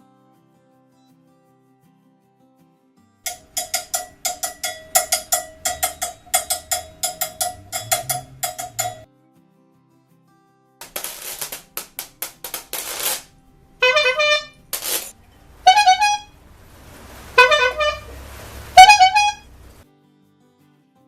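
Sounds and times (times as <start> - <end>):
noisemaker horn honks: 3.3 - 9.0, 12.6 - 19.8.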